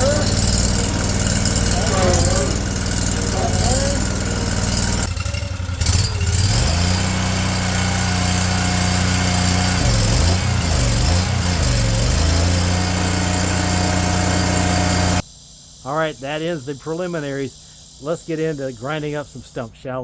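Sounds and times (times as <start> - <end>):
stump grinder engine running: 0.0 - 15.2.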